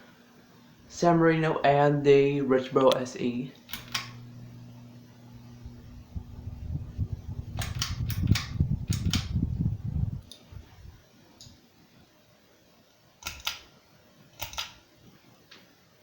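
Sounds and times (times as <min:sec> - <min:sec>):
low fan motor hum: 0:00.0 - 0:11.6
pull-chain switch clicks: 0:03.6 - 0:04.2, 0:07.6 - 0:09.4, 0:13.2 - 0:13.7, 0:14.4 - 0:14.8.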